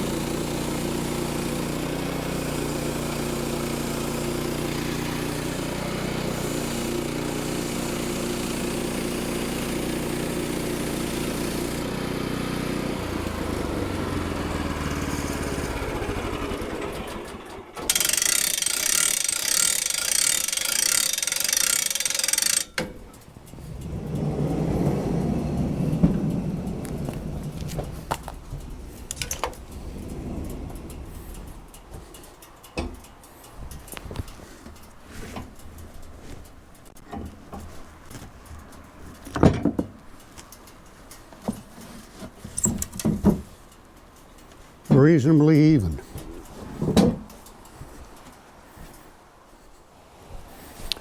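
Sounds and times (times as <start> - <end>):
high-pitched mechanical ratcheting clicks: 17.9 - 24.6
low mechanical rumble: 22.7 - 34.2
knocks and clunks: 22.7 - 35.8, 39.1 - 40.1, 41.3 - 43.6, 46.0 - 47.5.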